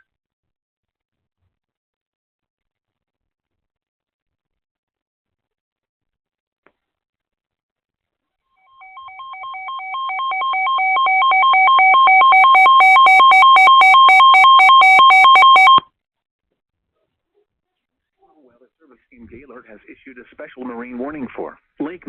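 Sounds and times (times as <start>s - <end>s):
alternating beeping alarm tones: 8.7s - 15.8s.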